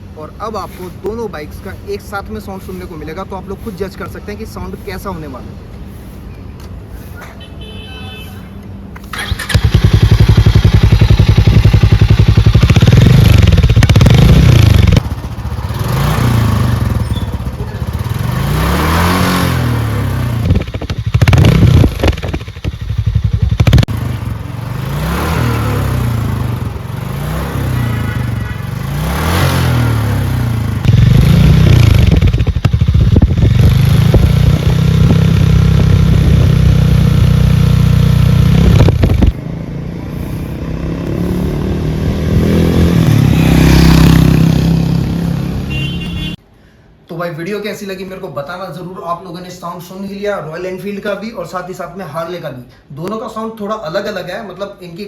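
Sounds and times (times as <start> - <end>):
motorcycle engines revving: 9.1 - 46.4.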